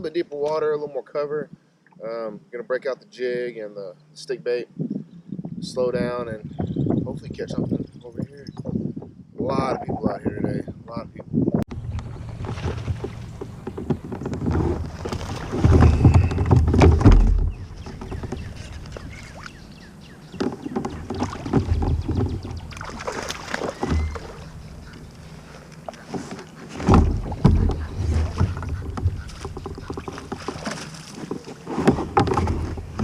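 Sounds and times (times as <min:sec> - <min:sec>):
wind buffeting microphone: 0:04.7 - 0:26.2, 0:26.8 - 0:30.7
water lapping: 0:11.7 - 0:33.0
small knocks on kayak: 0:12.0 - 0:19.5, 0:20.3 - 0:24.3, 0:25.9 - 0:33.0.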